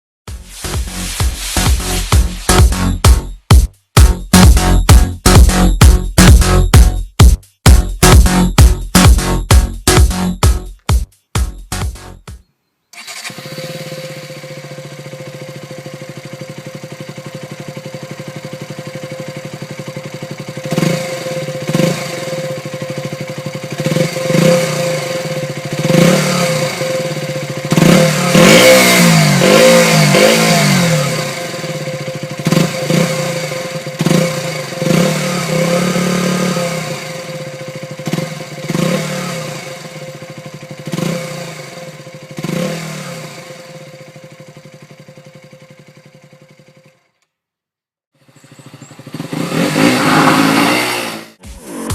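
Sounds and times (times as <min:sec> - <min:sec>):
motorcycle engine idling and revving: 0:00.3 - 0:12.4, 0:13.0 - 0:47.5, 0:48.1 - 0:51.9.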